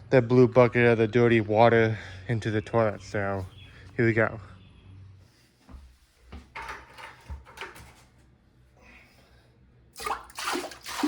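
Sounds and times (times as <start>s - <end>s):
water rushing into toilet bowl: 10.0s - 11.0s.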